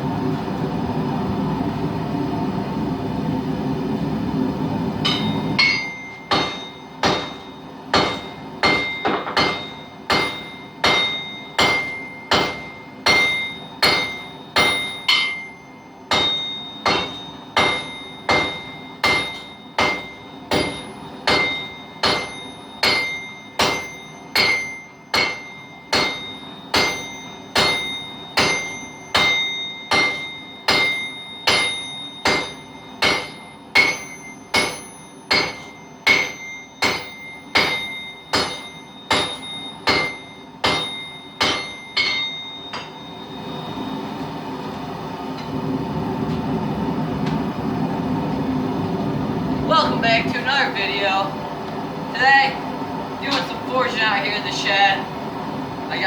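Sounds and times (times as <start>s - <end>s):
hammer striking steel on anvil: 5.0s - 43.6s
steady rumbling noise: 40.9s - 56.0s.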